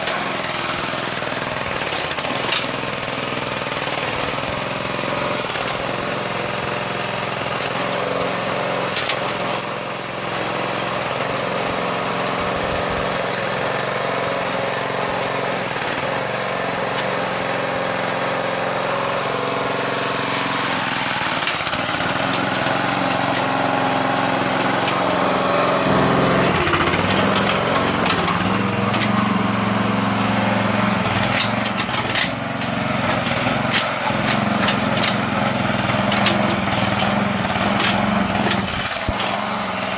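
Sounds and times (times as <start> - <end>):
mini backhoe engine running: 0.0 - 39.9
sharp metal clanks: 21.0 - 39.9.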